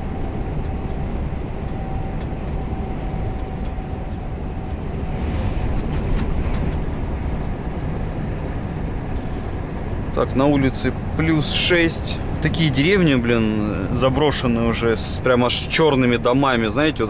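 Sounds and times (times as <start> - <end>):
truck engine and road rumble: 0.0 - 17.0.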